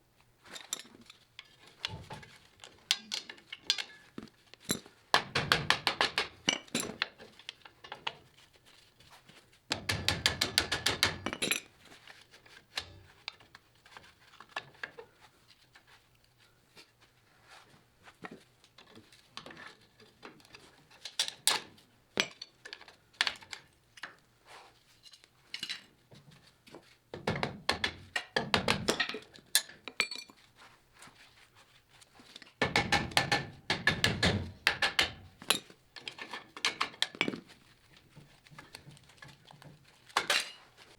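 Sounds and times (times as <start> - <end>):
metal hand tools clinking on steel: 6.4 - 8.1, 28.9 - 30.5, 40.2 - 40.8.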